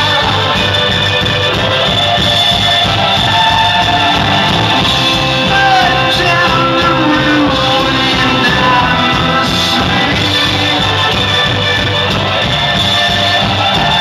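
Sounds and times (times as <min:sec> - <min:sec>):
man singing: 0:00.0 - 0:01.2, 0:04.8 - 0:11.8
rock band playing: 0:00.0 - 0:14.0.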